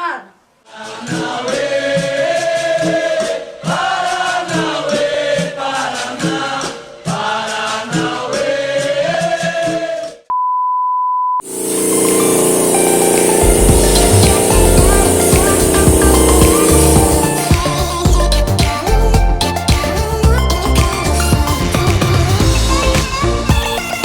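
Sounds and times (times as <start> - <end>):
music with choral singing: 0.7 - 10.2, 12.1 - 24.0
electronic beep: 10.3 - 17.8
loud noisy sound: 11.4 - 18.1.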